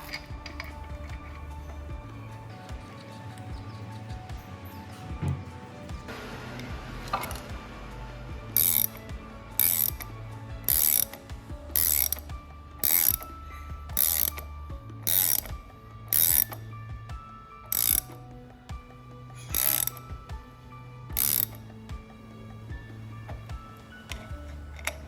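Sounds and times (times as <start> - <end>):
ratchet wrench clicking: 0.0 - 1.4, 8.6 - 16.6, 17.7 - 18.2, 19.4 - 20.1, 21.1 - 21.7.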